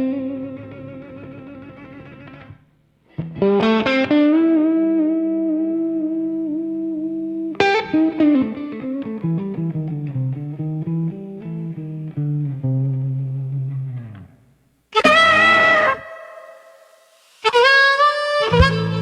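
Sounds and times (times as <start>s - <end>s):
slow blues guitar: 0.0s - 19.0s
walking bass line: 18.4s - 19.0s.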